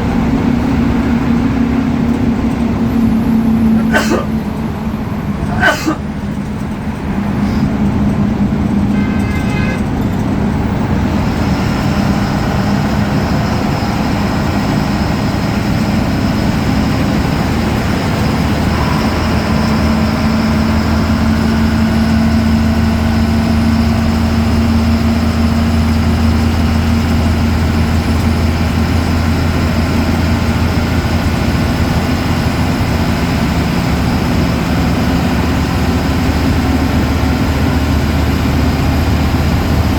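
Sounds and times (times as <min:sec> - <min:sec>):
bus diesel engine running: 0:00.0 - 0:39.9
turbo whistle: 0:11.4 - 0:24.0.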